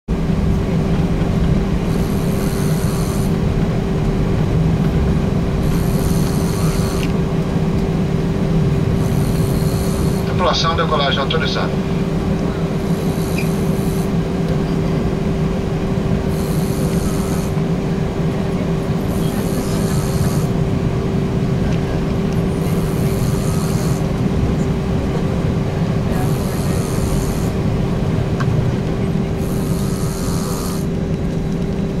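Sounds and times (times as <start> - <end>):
airliner cabin drone: 0.1 - 32.0
person snoring: 1.9 - 3.3, 5.6 - 7.0, 9.0 - 10.3, 12.8 - 14.1, 16.3 - 17.6, 19.1 - 20.5, 22.6 - 24.1, 26.2 - 27.6, 29.4 - 30.9.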